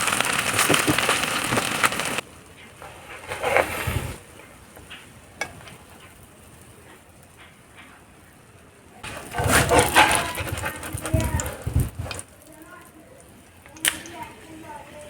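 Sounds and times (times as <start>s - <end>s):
egg sizzling in hot oil: 0.0s - 2.2s
scraping and clinking: 9.1s - 12.2s.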